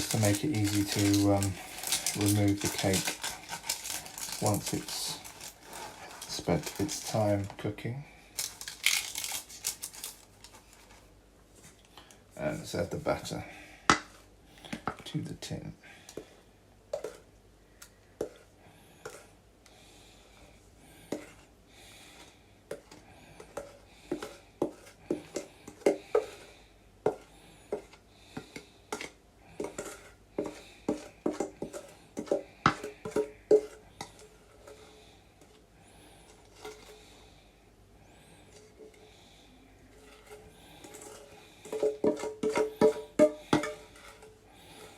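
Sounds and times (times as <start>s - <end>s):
utensil scraping a mixing bowl: 0.0s - 7.6s, 18.2s - 19.4s, 21.1s - 37.1s, 39.8s - 44.9s.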